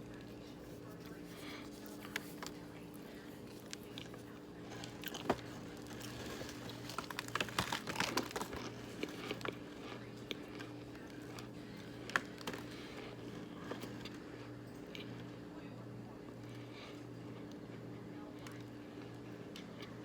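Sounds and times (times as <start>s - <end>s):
cornstarch crackling and crunching: 0.0s - 15.4s
faint steady hum: 0.0s - 20.0s.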